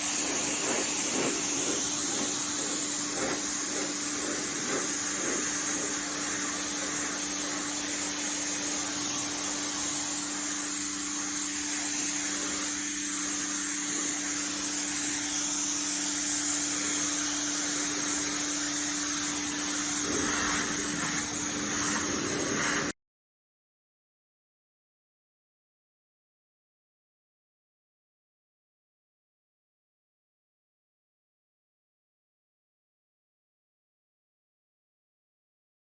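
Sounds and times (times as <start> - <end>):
pump humming: 0.0 - 22.9
high-pressure water spray hissing: 0.0 - 23.0.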